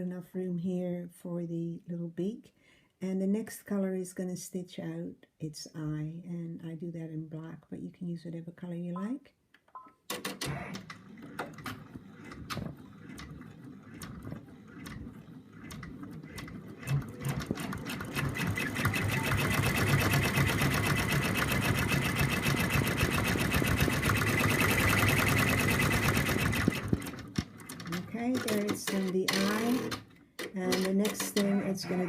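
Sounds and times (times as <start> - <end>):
embroidery machine stitching: 10.1 - 32.0.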